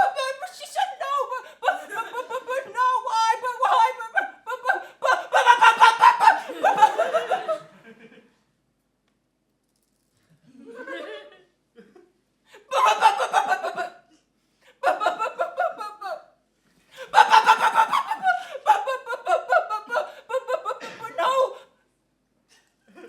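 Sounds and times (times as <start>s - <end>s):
person laughing: 1.3s - 7.7s, 12.7s - 14.0s, 14.8s - 16.2s, 17.0s - 21.5s.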